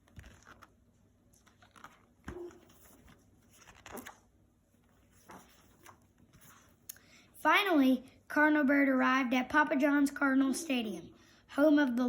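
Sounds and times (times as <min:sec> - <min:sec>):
book pages turning: 0:00.0 - 0:06.9.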